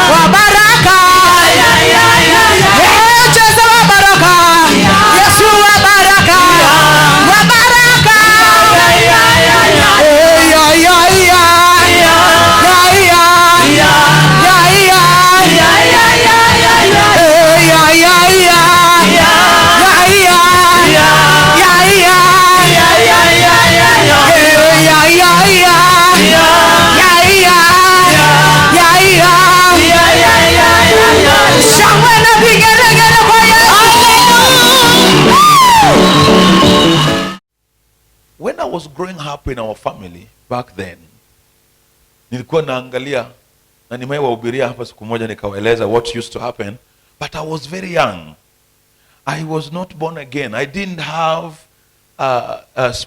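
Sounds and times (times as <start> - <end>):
voices singing praise music: 0.0 - 37.4
band playing: 0.9 - 37.4.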